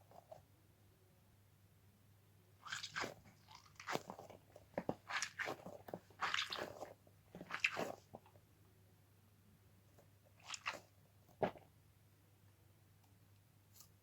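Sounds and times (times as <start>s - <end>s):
stress ball crunching: 2.7s - 8.3s.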